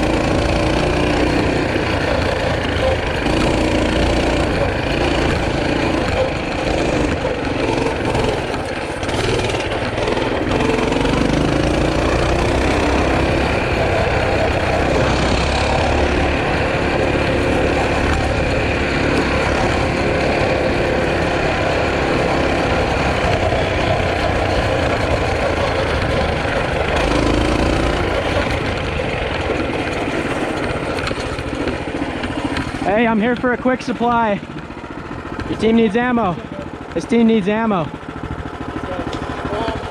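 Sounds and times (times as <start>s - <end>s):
small motorbike engine revving: 0.0s - 39.9s.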